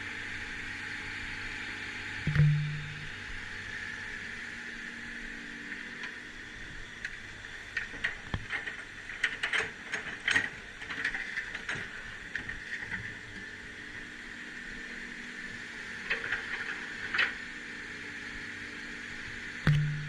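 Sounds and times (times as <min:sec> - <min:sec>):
excavator machine hum: 0:00.0 - 0:20.0
sharp clanks and knocks: 0:02.3 - 0:03.2, 0:19.7 - 0:20.0.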